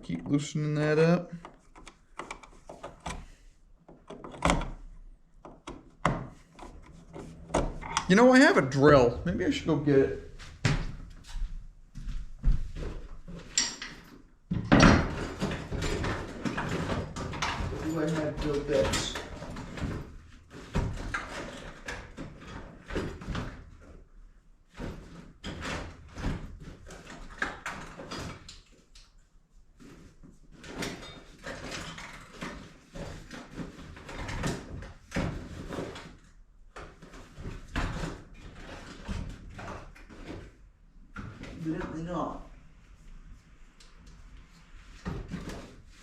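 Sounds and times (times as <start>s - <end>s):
tools knocking and clattering: 3.9s - 4.8s, 13.3s - 23.6s
drawers opening and shutting: 5.6s - 11.0s, 13.1s - 23.8s.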